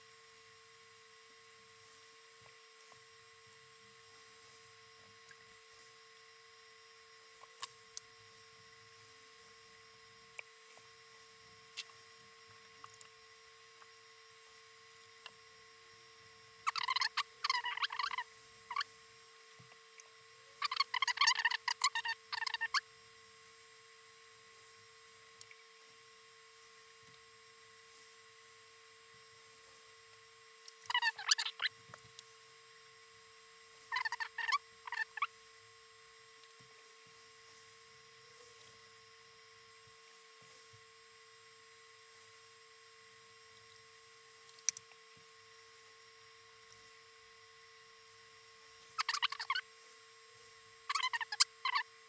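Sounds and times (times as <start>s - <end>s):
faint steady whine: 0.0s - 52.0s
cotton bud squeaking on surface: 16.7s - 18.9s, 20.6s - 22.8s, 30.9s - 31.9s, 33.9s - 35.3s, 49.0s - 49.6s, 50.9s - 51.8s.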